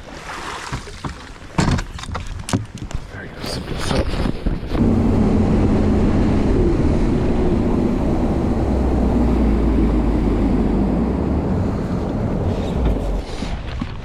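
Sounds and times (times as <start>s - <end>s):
outboard motor running: 4.1s - 13.8s
wind rushing: 4.7s - 13.7s.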